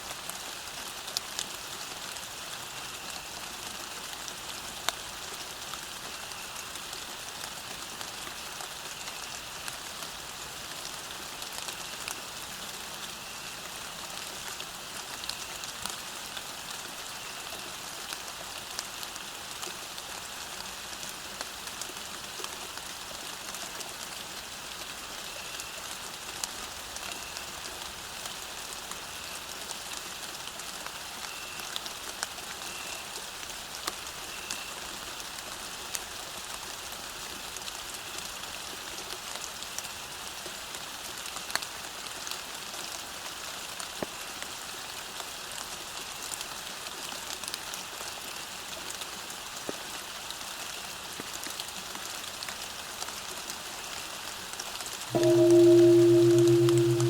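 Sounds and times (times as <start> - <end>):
rain hissing on a road: 0.0 - 55.1.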